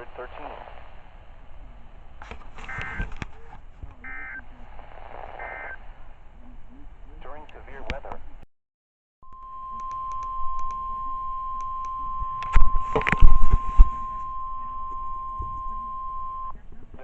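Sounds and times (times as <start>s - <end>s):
steady alarm beep: 4.1s - 4.4s, 5.4s - 5.8s, 9.2s - 16.5s.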